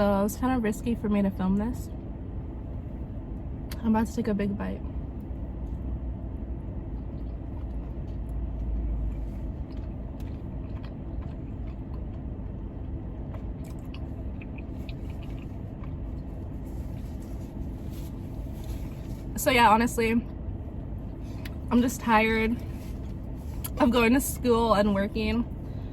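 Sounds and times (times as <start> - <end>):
car air conditioning hum: 0.0 - 25.9
biting and chewing food: 6.8 - 19.1.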